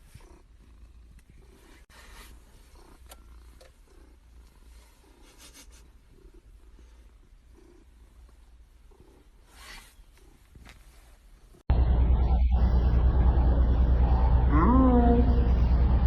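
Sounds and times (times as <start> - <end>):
cat purring: 0.0 - 11.6.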